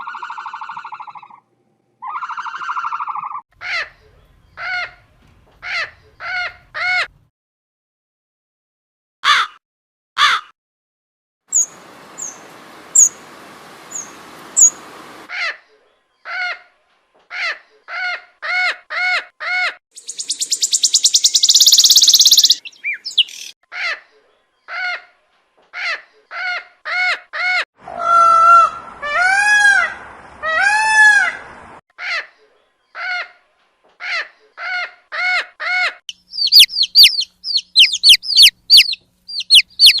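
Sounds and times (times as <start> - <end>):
long rising and falling bird calls: 0.0 - 1.4, 2.0 - 3.4, 11.5 - 15.3, 20.0 - 23.6, 36.1 - 40.0
birds chirping: 2.0 - 7.1, 11.5 - 16.3, 20.0 - 23.6, 36.1 - 40.0
bird short repeated calls: 35.3 - 40.0
harsh buzzing bird call: 36.3 - 40.0.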